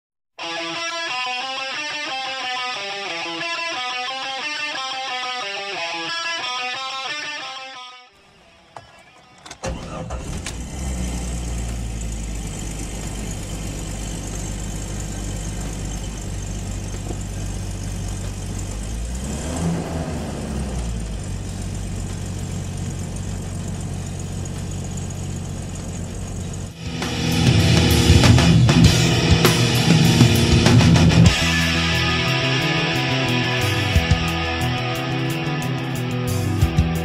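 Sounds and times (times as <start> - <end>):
car engine idling: 8.2 - 37.0.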